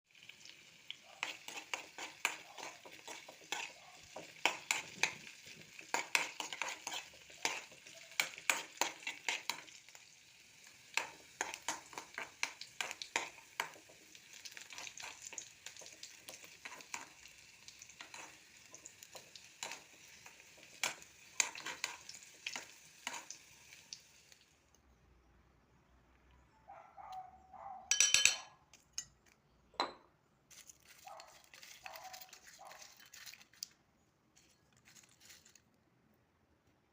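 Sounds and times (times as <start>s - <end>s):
frying in oil sizzle: 0.1s - 24.8s
stirring clicks and scrapes: 1.2s - 9.7s, 17.9s - 23.4s, 30.5s - 35.8s.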